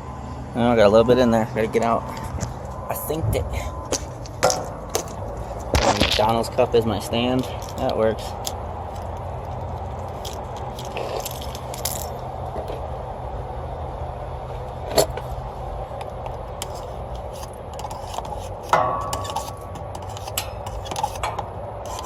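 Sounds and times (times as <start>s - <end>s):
low hum: 0.0s - 22.0s
metal tubing clicks and scrapes: 16.0s - 22.0s.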